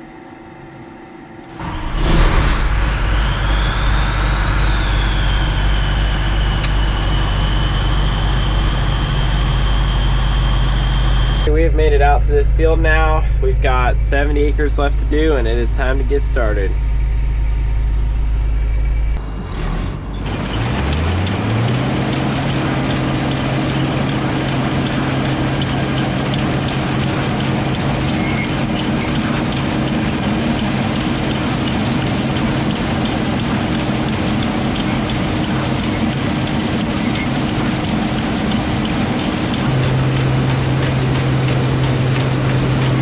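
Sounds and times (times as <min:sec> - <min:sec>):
combine harvester whine and hum: 0:00.0 - 0:43.0
mechanical clatter: 0:01.4 - 0:10.0, 0:20.1 - 0:43.0.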